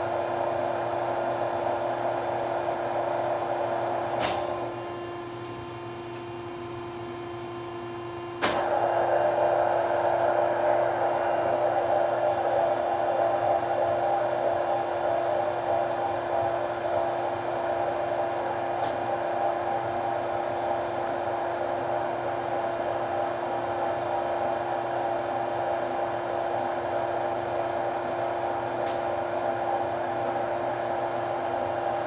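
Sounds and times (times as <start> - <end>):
grinder machine hum: 8.6 - 17.8.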